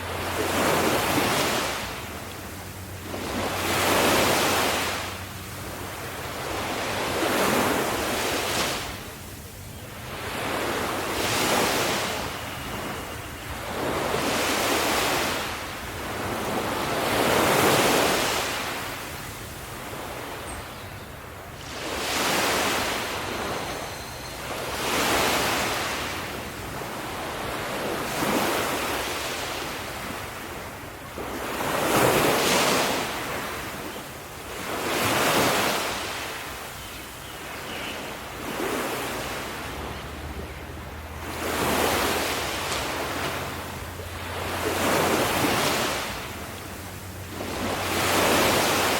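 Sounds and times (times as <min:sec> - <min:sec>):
ocean waves breaking: 0:00.0 - 0:48.9.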